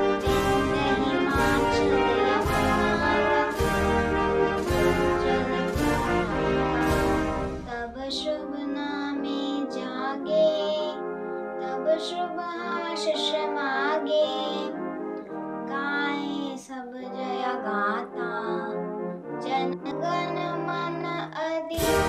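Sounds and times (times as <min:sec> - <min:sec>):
sustained instrumental notes: 0:00.0 - 0:08.6
song with sung melody: 0:00.0 - 0:22.0.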